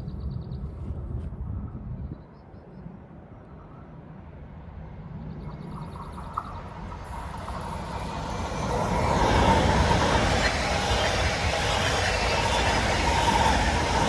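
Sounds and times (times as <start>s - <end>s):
train rumbling: 5.4s - 14.0s.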